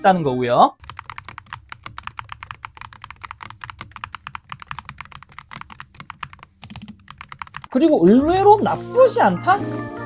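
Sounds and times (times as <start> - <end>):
keyboard keystroke clacks: 0.8 - 7.7.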